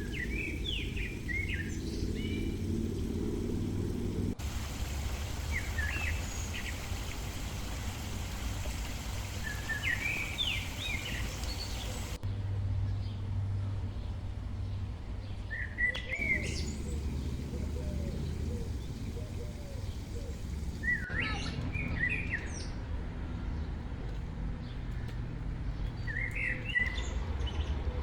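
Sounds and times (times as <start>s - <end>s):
small birds chirping: 0.0s - 12.2s, 15.2s - 22.8s
low outdoor rumble: 0.0s - 21.8s.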